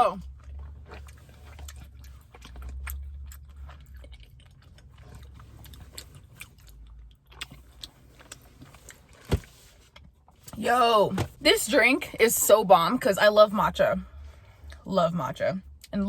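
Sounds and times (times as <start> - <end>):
low steady rumble: 0.0 - 16.0
wet mouth clicks chewing: 0.2 - 8.4.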